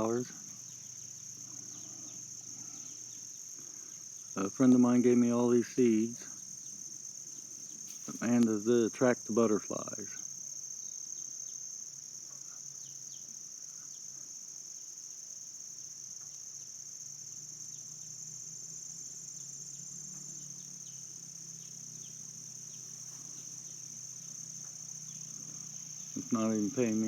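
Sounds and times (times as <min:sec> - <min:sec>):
insects trilling: 0:00.0 - 0:27.0
faint low hum: 0:15.8 - 0:27.0.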